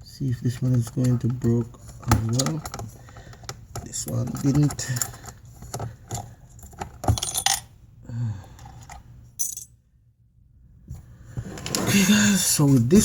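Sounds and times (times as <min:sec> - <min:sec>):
small metal parts clinking: 0:04.0 - 0:07.7, 0:08.6 - 0:09.8.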